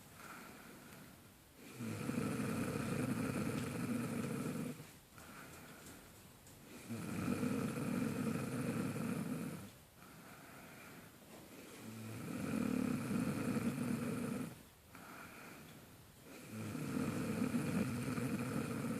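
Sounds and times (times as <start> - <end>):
woman snoring: 1.6 - 5.3, 6.7 - 9.7, 11.8 - 15.5, 16.3 - 18.9.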